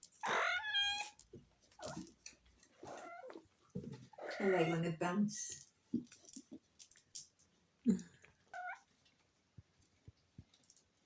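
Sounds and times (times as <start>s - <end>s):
kitten meowing: 0.2s - 1.2s.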